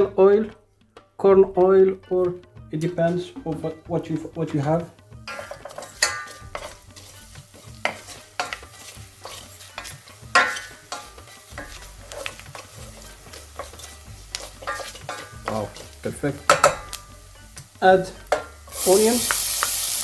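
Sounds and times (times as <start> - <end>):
seeds sizzling in oil: 4.9 - 20.0
spoon clinking against pan: 5.2 - 17.1, 18.3 - 20.0.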